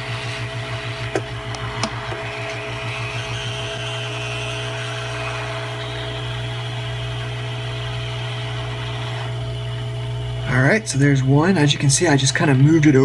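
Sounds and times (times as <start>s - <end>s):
hot air blower hissing: 0.0s - 12.6s
motor hum: 0.0s - 13.0s.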